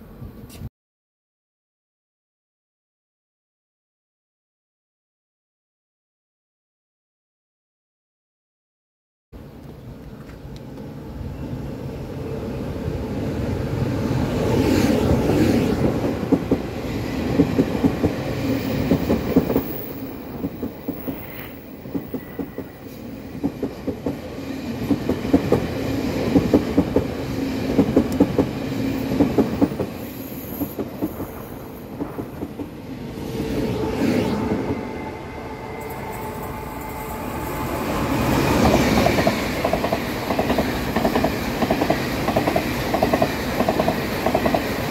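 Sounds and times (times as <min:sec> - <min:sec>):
train rumble passing: 0:09.5 - 0:44.9.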